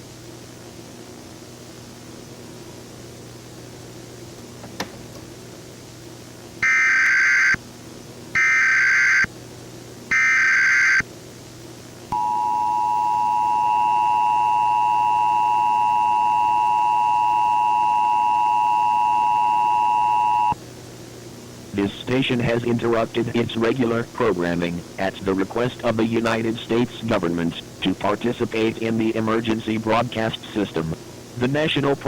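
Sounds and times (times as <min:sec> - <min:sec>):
faint low hum: 0:10.0 - 0:32.0
digital data bursts: 0:21.8 - 0:32.0.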